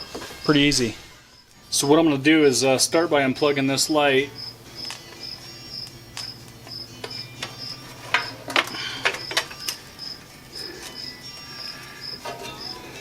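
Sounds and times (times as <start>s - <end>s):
cricket chirping: 3.8s - 13.0s.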